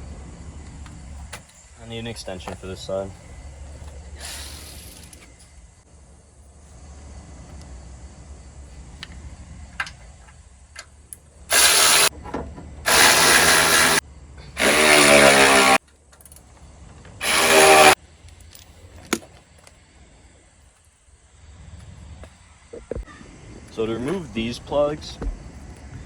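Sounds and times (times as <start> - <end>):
power tool spinning bolts: 4.2 - 5.5, 11.5 - 12.1, 12.9 - 14.0, 14.6 - 15.8, 17.2 - 18.0.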